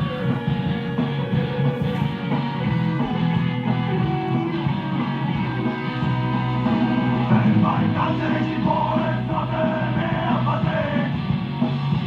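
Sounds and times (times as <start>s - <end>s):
rock song with guitar and drums: 0.0s - 12.0s
person singing: 6.9s - 11.2s.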